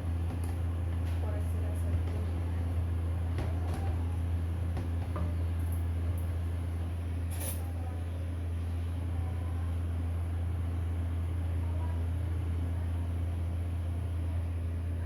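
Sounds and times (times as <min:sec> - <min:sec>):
low mechanical hum: 0:00.0 - 0:15.0
light clinks: 0:07.3 - 0:07.7.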